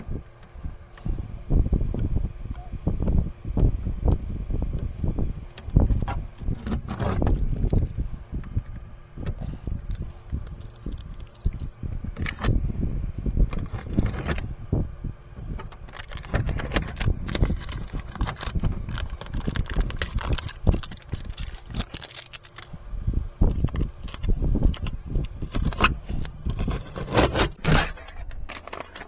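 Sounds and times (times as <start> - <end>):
low rumbling handling noise: 0.0 - 29.0
tape peeling crackle: 6.6 - 8.0, 9.6 - 12.5, 15.6 - 22.8
scraping: 23.5 - 29.0.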